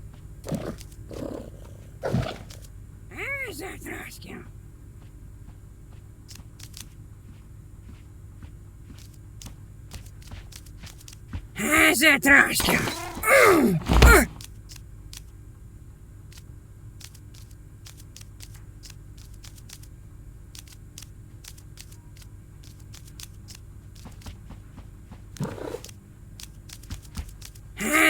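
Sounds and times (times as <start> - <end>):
cat purring: 0.4 - 2.7.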